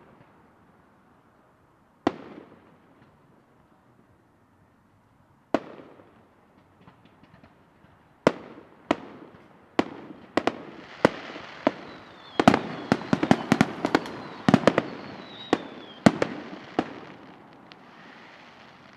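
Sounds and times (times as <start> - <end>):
fireworks bangs: 8.3 - 18.9
fireworks crackling: 9.8 - 18.9.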